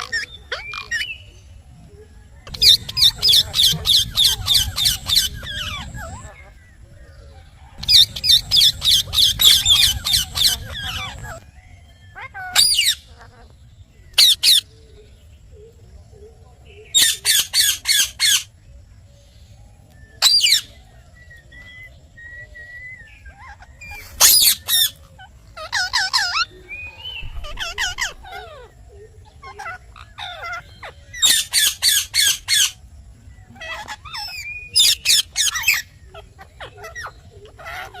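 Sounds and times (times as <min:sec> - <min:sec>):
parakeet screeching: 0:02.5 - 0:06.4, 0:07.8 - 0:11.4, 0:23.4 - 0:26.5, 0:27.2 - 0:28.7
parakeet whistles and chattering: 0:02.5 - 0:06.4, 0:07.8 - 0:11.4, 0:22.6 - 0:32.8.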